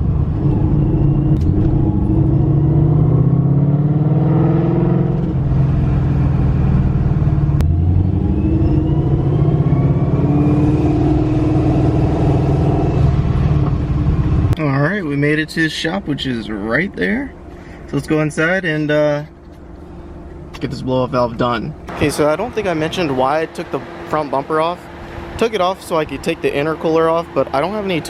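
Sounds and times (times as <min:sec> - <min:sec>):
car engine accelerating: 0:00.0 - 0:28.0.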